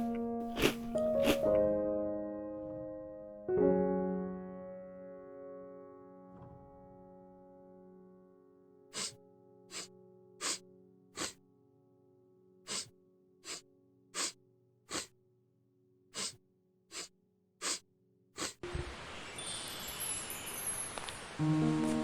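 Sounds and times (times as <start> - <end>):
piano chord: 0.0 - 9.6, 21.4 - 22.0
breathy hissing bursts: 8.9 - 10.6, 11.2 - 11.4, 12.7 - 13.6, 14.2 - 15.1, 16.2 - 17.8, 18.4 - 18.7
rain-like noise: 18.6 - 22.0.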